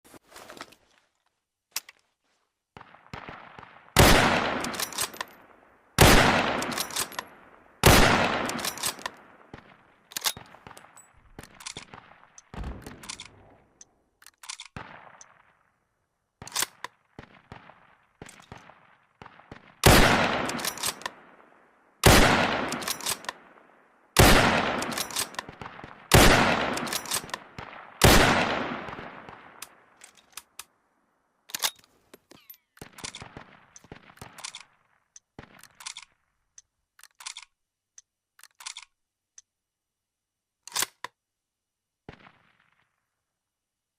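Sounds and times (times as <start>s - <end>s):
rifle shots echoing: 2.8s - 13.8s, 14.7s - 15.8s, 16.4s - 30.6s, 32.8s - 35.8s, 42.1s - 43.0s
short metallic clicks: 34.2s - 39.5s, 40.6s - 41.2s.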